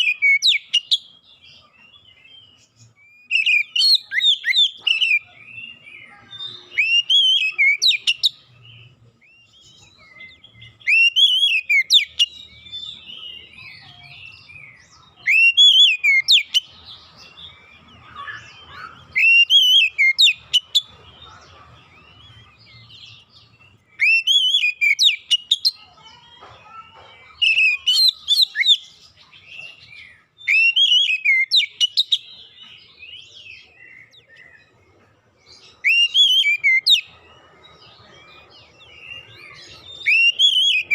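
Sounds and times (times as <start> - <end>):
bird singing whistled phrases: 0.0 - 1.2, 2.4 - 16.7, 17.6 - 20.9, 23.8 - 25.8, 27.4 - 34.6, 35.7 - 37.2, 38.8 - 40.9.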